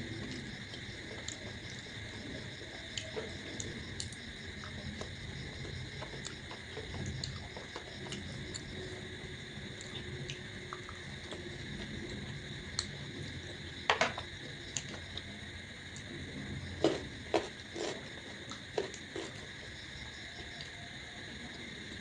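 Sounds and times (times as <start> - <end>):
crickets droning: 0.0 - 22.0
wet chewing and smacks: 0.2 - 8.9.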